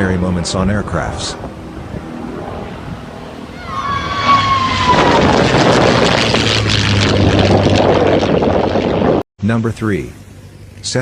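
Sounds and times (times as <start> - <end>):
propeller airplane engine: 0.0 - 9.2, 10.0 - 11.0
low hum: 0.0 - 11.0
high sliding tone: 3.3 - 6.8.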